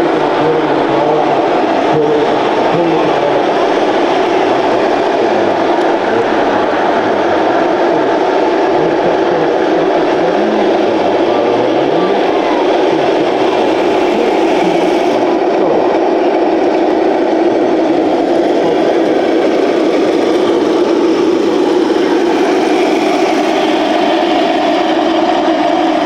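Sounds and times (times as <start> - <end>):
simulated diesel engine running: 0.0 - 26.0.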